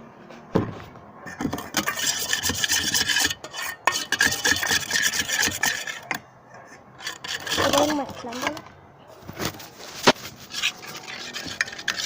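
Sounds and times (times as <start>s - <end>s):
utensil scraping container sides: 1.3s - 8.7s, 9.4s - 12.0s
slime being stirred: 1.5s - 6.1s, 7.0s - 8.5s, 9.9s - 12.0s.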